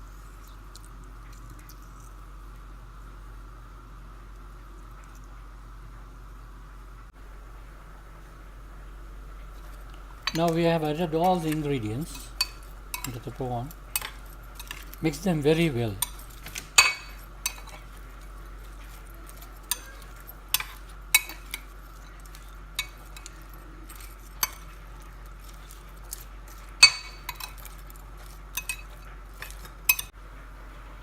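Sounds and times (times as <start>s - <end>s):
faint steady hum: 0.0s - 31.0s
spoon clinking against bowl: 10.3s - 30.1s.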